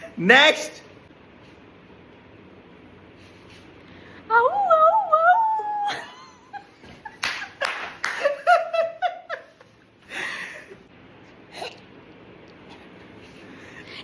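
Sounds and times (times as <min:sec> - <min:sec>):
person laughing: 0:05.8 - 0:07.6.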